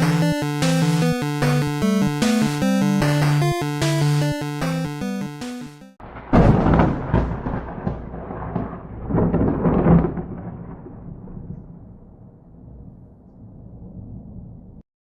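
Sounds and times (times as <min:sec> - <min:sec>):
thunder rumbling: 0:06.0 - 0:14.8.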